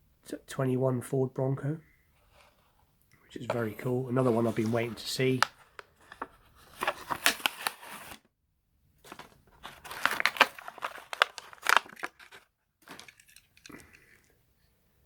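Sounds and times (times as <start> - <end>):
cardboard tearing: 6.8 - 8.2, 9.1 - 13.2
plastic crinkling and crackling: 9.0 - 14.3.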